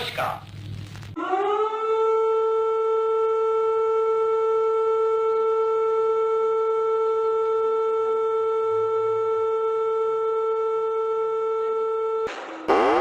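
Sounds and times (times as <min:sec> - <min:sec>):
air-raid siren steady tone: 0:01.2 - 0:13.0.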